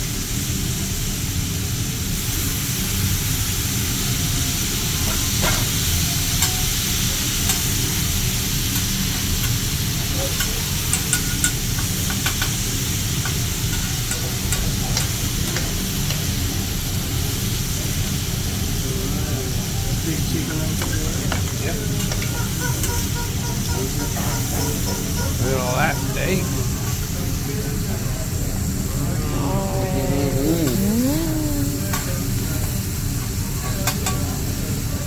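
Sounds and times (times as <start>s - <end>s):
food sizzling on griddle: 0.0s - 23.5s.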